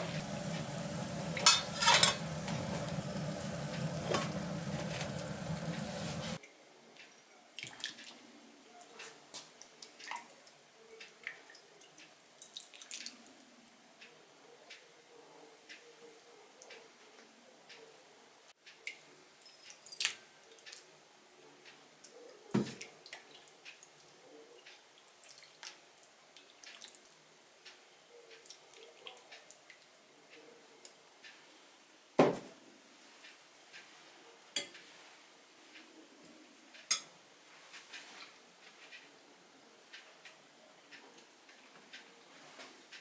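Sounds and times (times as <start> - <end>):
dishes and cutlery clinking: 1.3 - 3.0.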